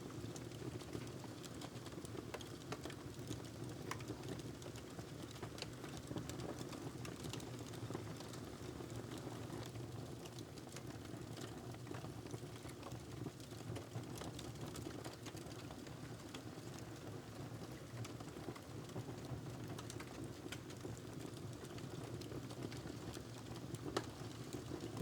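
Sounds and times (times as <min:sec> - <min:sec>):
wood fire crackling: 0:19.7 - 0:25.0.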